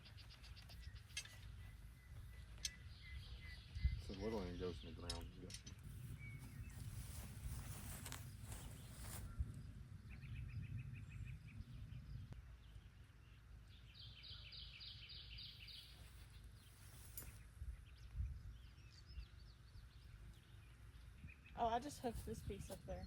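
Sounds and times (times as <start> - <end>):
low steady rumble: 0.0 - 23.0
songbirds singing: 0.0 - 23.0.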